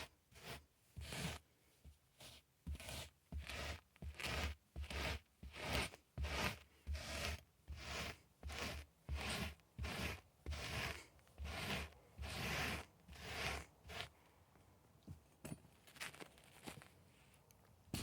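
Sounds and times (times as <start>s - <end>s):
carpet brushing strokes: 0.0s - 14.4s.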